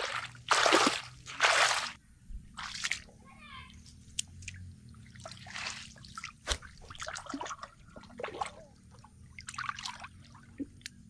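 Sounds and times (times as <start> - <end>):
hands splashing in muddy water: 0.0 - 2.0, 5.2 - 8.6.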